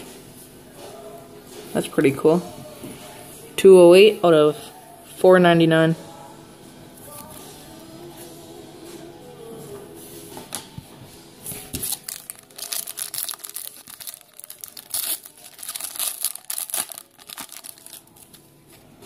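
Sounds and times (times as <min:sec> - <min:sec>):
wrapper tearing and crinkling: 0:11.6 - 0:18.4.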